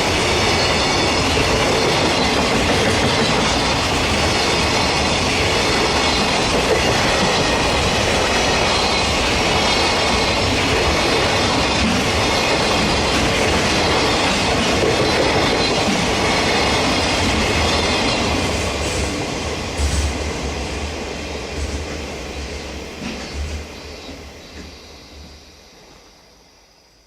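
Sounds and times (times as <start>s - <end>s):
wheels clacking over rail joints: 0.0s - 19.0s
freight train wagons rolling past: 0.0s - 26.0s.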